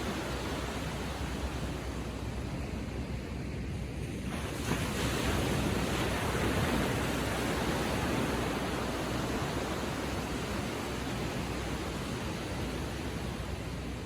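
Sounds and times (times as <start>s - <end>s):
ocean wave breaking on beach: 3.9s - 14.0s.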